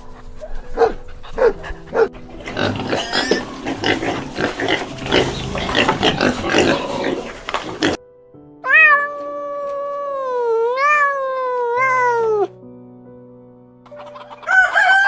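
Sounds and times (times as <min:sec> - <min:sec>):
pigs grunting and squealing: 0:01.6 - 0:08.0.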